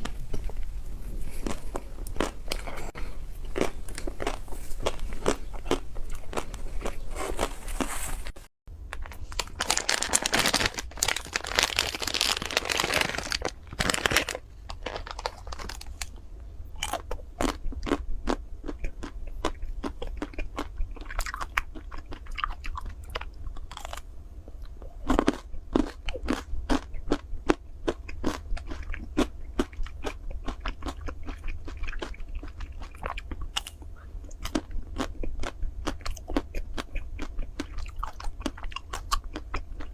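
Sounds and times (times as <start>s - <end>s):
crunchy chewing of ice cream bar: 0.0s - 8.0s, 16.8s - 39.9s.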